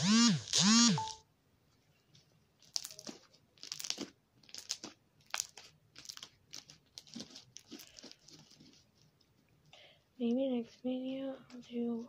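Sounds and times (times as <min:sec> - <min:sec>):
slime crackling squishes: 0:02.6 - 0:09.0.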